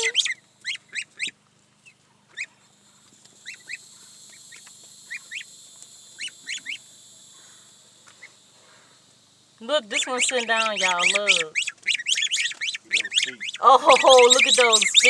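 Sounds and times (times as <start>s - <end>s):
geese honking: 9.7s - 15.0s.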